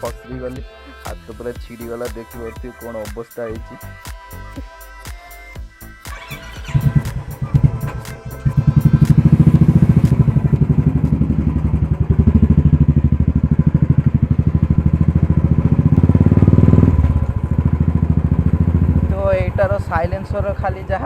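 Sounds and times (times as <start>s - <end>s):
motorcycle exhaust thumping: 6.1s - 21.0s.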